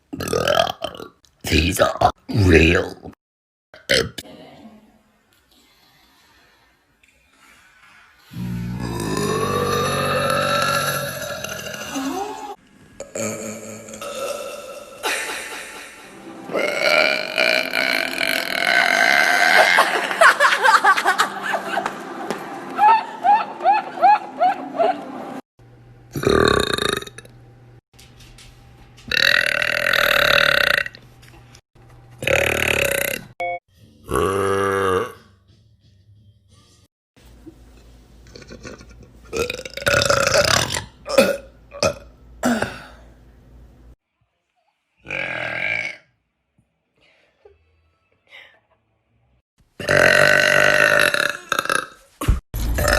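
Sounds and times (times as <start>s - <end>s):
girl burping: 8.8s - 15.0s, 39.4s - 43.0s.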